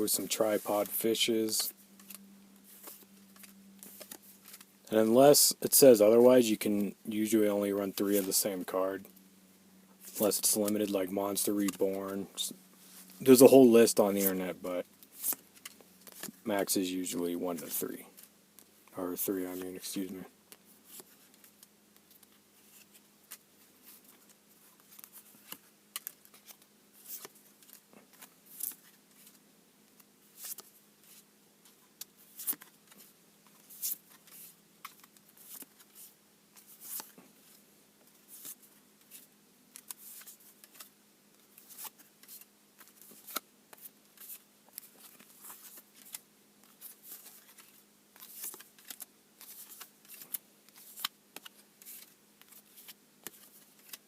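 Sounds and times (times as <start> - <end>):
faint steady hum: 0.0 - 54.0
trading cards swishing and flicking: 0.4 - 4.7, 10.0 - 14.5, 30.3 - 37.6, 41.5 - 54.0.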